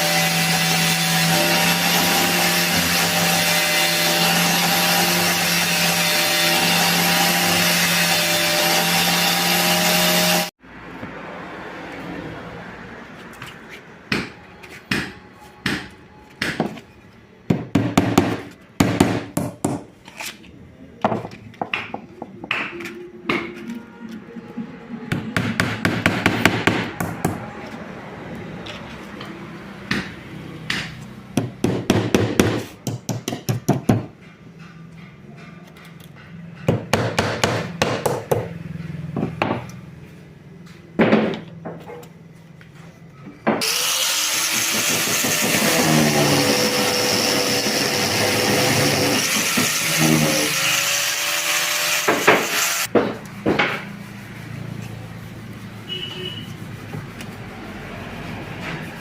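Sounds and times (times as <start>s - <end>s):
angle grinder running: 43.6s - 52.9s.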